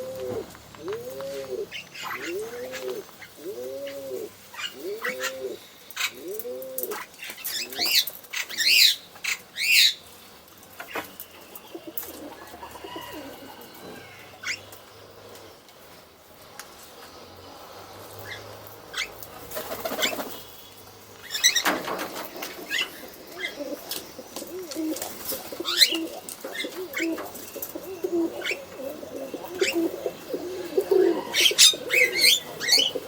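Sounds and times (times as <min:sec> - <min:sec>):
pigeon cooing: 0:00.0 - 0:08.0, 0:11.7 - 0:14.2, 0:22.7 - 0:33.0.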